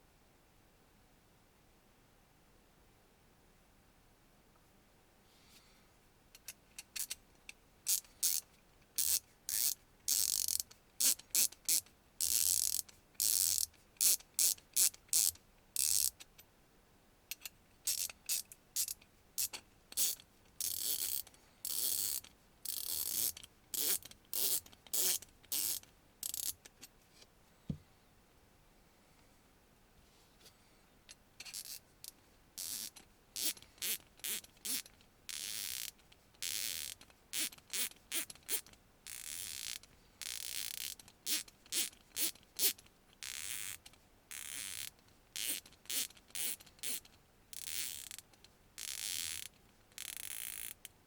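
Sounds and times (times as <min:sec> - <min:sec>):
ratchet wrench clicking: 0:07.9 - 0:08.4, 0:09.0 - 0:16.1, 0:17.4 - 0:19.0, 0:20.0 - 0:26.6, 0:32.6 - 0:38.2, 0:47.6 - 0:48.2, 0:48.8 - 0:50.8.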